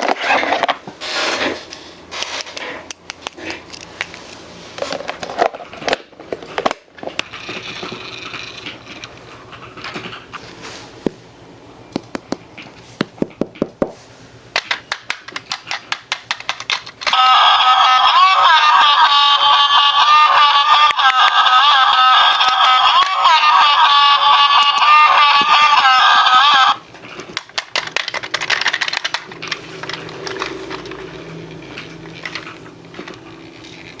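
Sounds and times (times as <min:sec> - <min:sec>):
toy clicking: 0:14.6 - 0:26.8, 0:27.4 - 0:31.0
loud high-pitched tune: 0:17.1 - 0:26.8.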